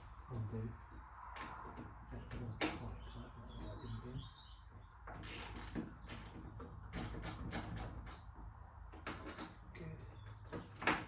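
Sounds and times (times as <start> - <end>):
bird chirping: 2.1 - 5.1.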